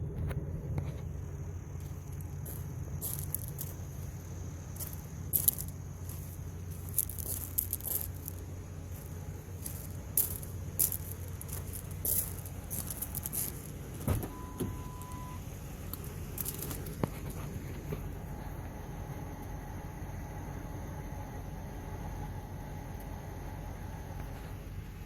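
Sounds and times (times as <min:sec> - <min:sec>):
pickup engine idling: 0:00.0 - 0:25.0
short steady beep: 0:14.1 - 0:15.4.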